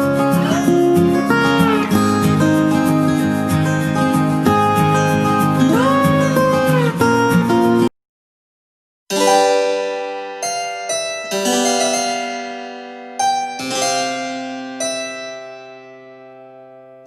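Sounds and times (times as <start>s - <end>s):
slow keyboard piece: 9.1s - 17.0s.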